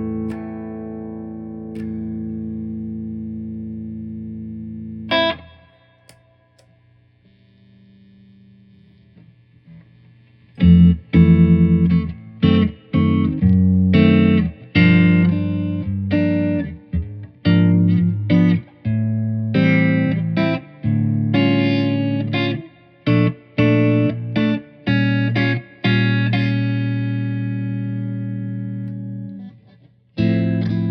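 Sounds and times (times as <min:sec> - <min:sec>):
electric guitar chords and notes: 0:00.0 - 0:30.9
faint hum: 0:01.3 - 0:24.8.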